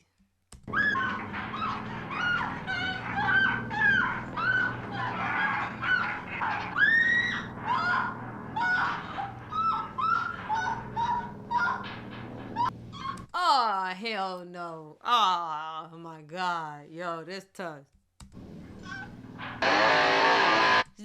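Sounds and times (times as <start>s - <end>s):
high-pitched cries bending in pitch: 0.7s - 12.0s.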